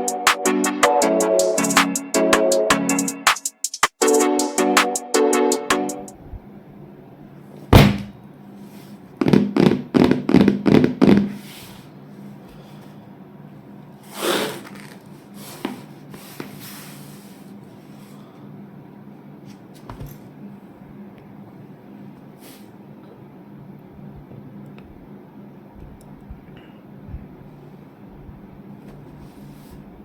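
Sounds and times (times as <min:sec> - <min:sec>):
steady low hum: 0:15.0 - 0:30.0.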